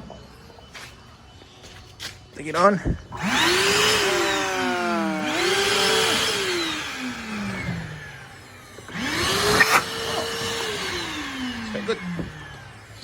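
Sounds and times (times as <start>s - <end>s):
vacuum cleaner motor whining: 3.1s - 13.0s.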